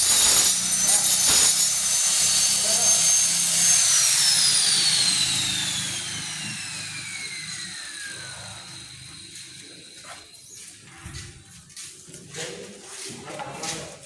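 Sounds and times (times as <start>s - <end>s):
angle grinder winding down: 0.0s - 10.3s.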